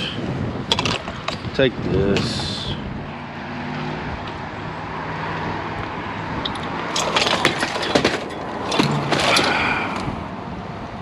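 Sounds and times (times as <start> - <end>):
scrap items clattering: 6.9 - 10.0.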